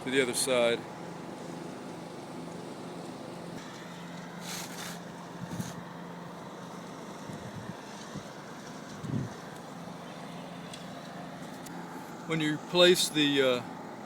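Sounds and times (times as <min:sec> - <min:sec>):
brief rustle: 0:03.6 - 0:05.8.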